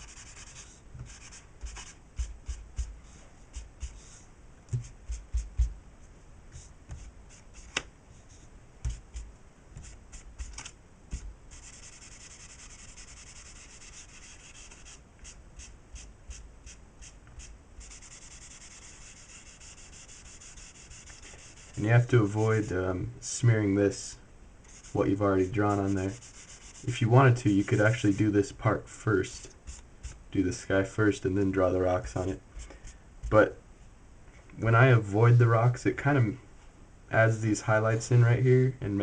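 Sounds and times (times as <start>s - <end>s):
tissue rubbing charcoal on paper: 0.0s - 5.7s, 6.5s - 22.7s, 24.7s - 28.3s
hand bumping paper: 4.7s - 5.8s, 8.8s - 11.3s.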